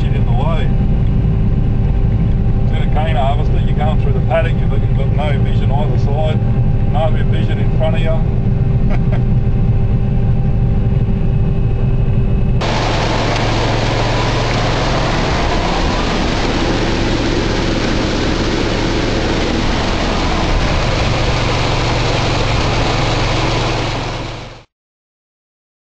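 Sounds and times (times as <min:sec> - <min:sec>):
heavy machine engine running: 0:00.0 - 0:24.7
loud rushing noise: 0:12.6 - 0:24.7.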